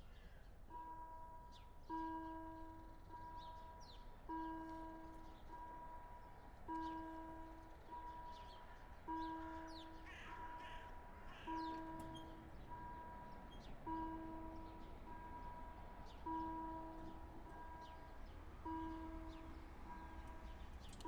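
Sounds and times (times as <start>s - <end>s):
level crossing warning bell: 0.8s - 20.8s
crow cawing: 10.1s - 11.6s.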